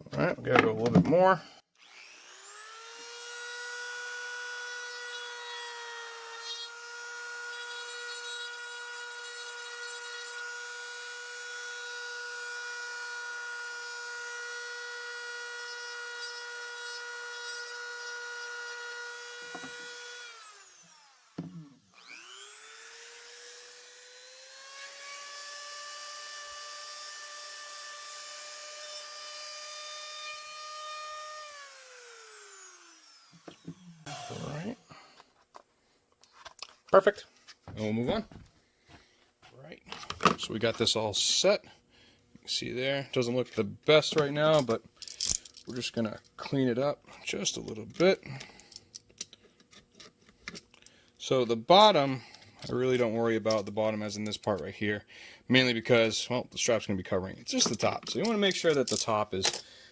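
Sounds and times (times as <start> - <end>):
rotary tool high whine: 1.8 - 35.0.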